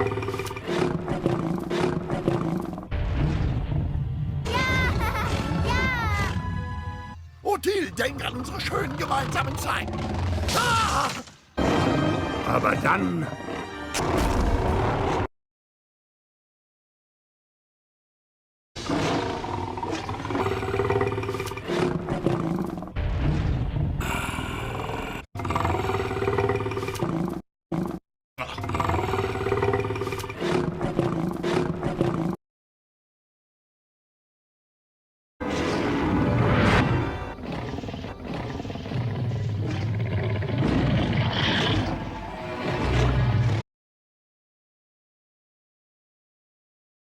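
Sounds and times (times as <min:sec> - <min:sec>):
cartoon monster roaring: 0:07.8 - 0:11.3
cartoon dinosaur roaring: 0:07.9 - 0:12.6, 0:36.0 - 0:43.6.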